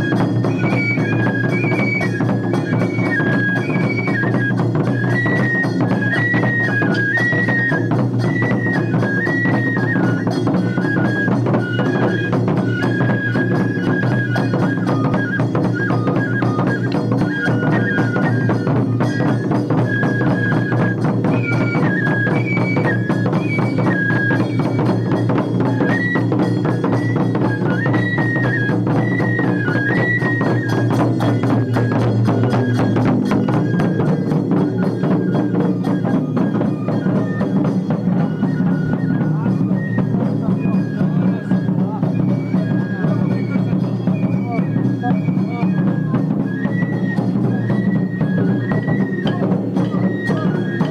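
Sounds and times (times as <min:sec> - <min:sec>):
bamboo flute melody: 0:00.0 - 0:50.9
fast percussion strokes: 0:00.0 - 0:50.9
taiko drums: 0:00.0 - 0:50.9.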